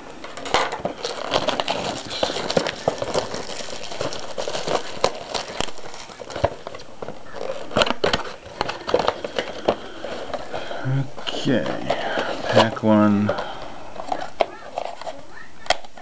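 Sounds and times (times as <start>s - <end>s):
cardboard being handled: 0.0s - 16.0s
plastic wrapping crinkling: 0.0s - 16.0s
small clicks and crackles: 0.2s - 10.6s.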